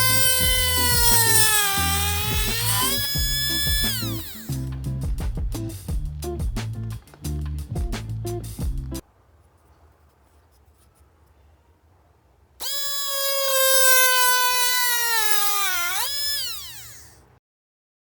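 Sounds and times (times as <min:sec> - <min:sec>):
small motor drill whining: 0:00.0 - 0:04.6, 0:12.6 - 0:17.2.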